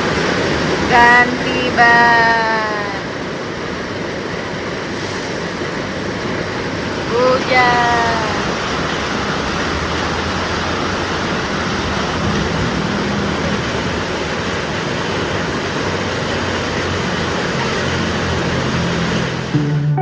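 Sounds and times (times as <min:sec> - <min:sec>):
heavy rain hissing: 0:00.0 - 0:19.5
vehicle low hum: 0:07.9 - 0:20.0.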